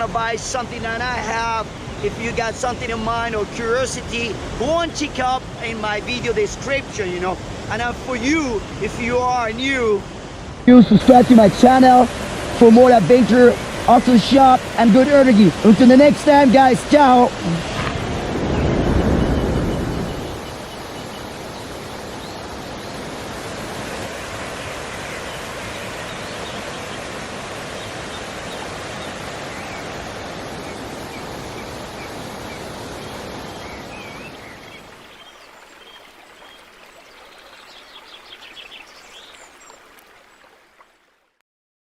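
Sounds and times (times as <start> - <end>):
waterfall rushing: 0.0 - 40.5
birds chirping: 10.7 - 40.9.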